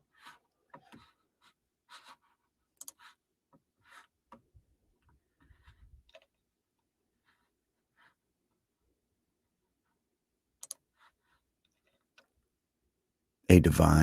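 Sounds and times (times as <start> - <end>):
faint rustling and scratching: 0.0 - 9.0, 10.8 - 12.4.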